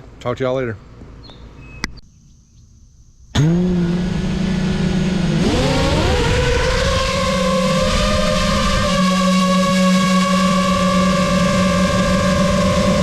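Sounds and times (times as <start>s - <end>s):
quadcopter motors whining: 3.3s - 13.0s.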